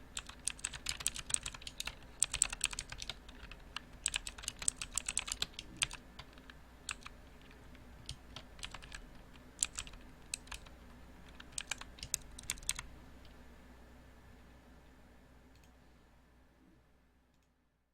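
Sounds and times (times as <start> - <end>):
faint low hum: 0.0 - 17.9
mechanical keyboard typing: 0.1 - 12.9.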